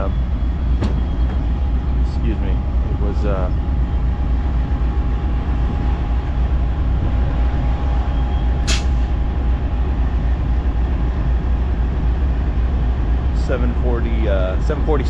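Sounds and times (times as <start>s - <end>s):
faint steady whine: 0.0s - 15.0s
locomotive idling rumble: 0.0s - 15.0s
air release hiss: 8.6s - 9.1s.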